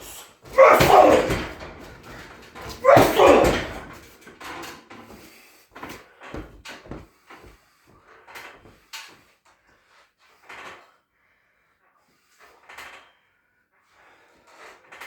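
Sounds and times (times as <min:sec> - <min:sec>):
soft knocks and thumps: 0:05.8 - 0:07.6.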